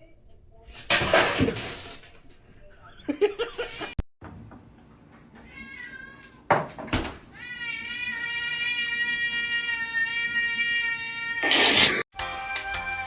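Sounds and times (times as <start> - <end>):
cat meowing: 5.4 - 6.4.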